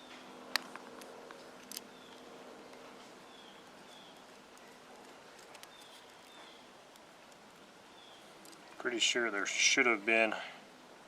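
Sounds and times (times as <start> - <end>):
small clicks of tools and parts: 0.5 - 2.3, 4.5 - 7.4, 8.4 - 8.7
bird chirping: 1.8 - 8.8.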